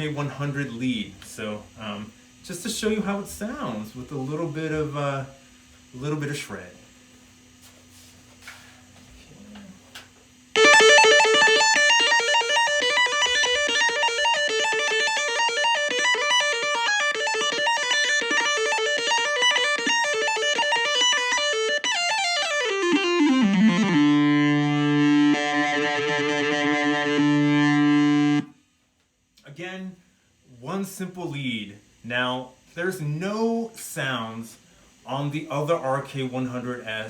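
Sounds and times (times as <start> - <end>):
synth lead fast run of notes: 22.9 - 28.5.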